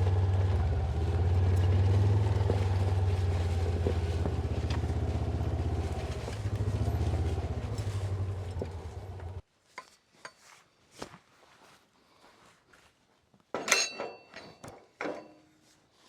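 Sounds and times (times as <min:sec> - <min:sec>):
vehicle engine running: 0:00.0 - 0:09.4
light metal clinks: 0:13.6 - 0:15.6.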